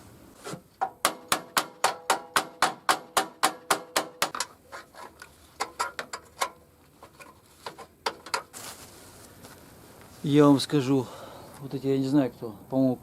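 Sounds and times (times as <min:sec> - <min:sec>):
hammer tapping on metal: 0:00.8 - 0:04.5.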